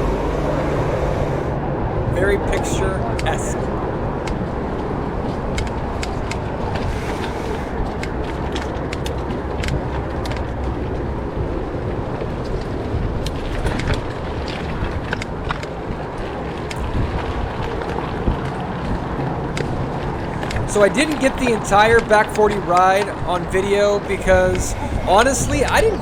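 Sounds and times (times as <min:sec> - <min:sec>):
tyres on dirt trail: 0:00.0 - 0:26.0
wind on microphone: 0:00.0 - 0:26.0
bike clicks and rattles: 0:04.2 - 0:24.0.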